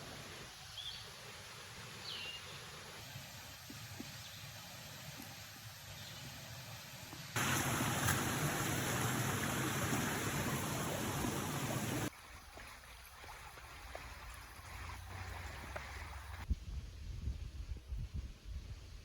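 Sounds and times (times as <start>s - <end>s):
loud rushing water: 7.4s - 16.4s.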